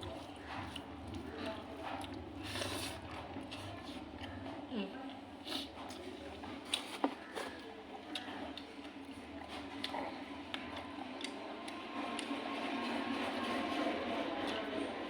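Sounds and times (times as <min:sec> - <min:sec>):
chewing clicks and smacks: 0:00.0 - 0:02.4, 0:05.9 - 0:13.0.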